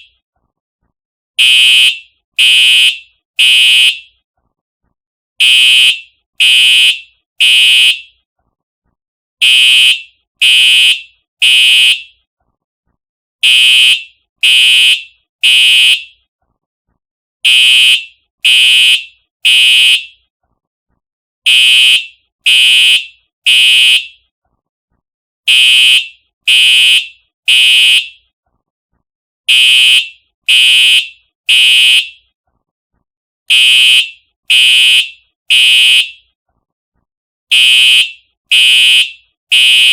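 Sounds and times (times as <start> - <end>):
fire alarm horn blasts: 1.4 - 4.1, 5.4 - 8.2, 9.4 - 12.2, 13.4 - 16.2, 17.4 - 20.2, 21.5 - 24.2, 25.5 - 28.2, 29.5 - 32.3, 33.5 - 36.3, 37.5 - 39.9.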